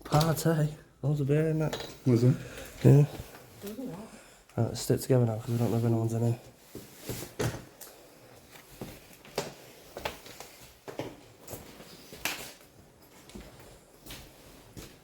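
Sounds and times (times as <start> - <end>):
footsteps on a hard floor: 13.0 - 15.0.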